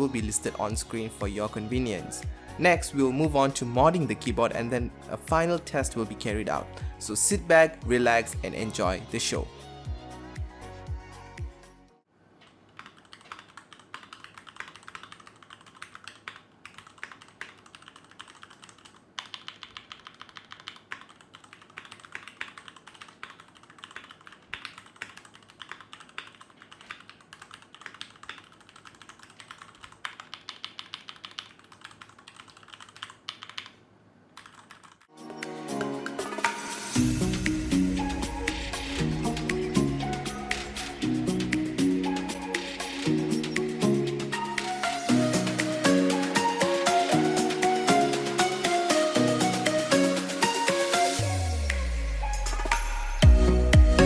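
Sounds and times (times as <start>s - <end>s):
background music: 0.0s - 12.0s, 35.1s - 54.0s
mechanical keyboard typing: 12.4s - 33.8s, 34.4s - 35.1s.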